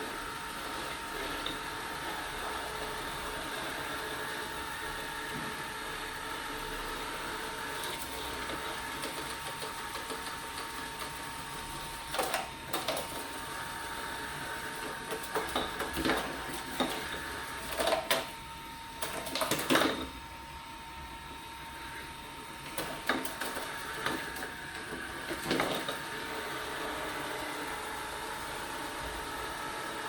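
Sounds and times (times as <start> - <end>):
robot vacuum hum and whine: 0.0 - 30.0
plastic knocks and clatters: 23.0 - 26.0.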